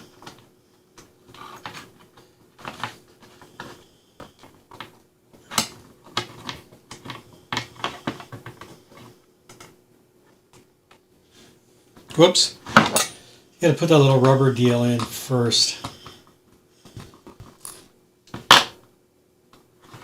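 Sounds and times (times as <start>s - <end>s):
plastic parts clicking and tapping: 1.0s - 9.8s.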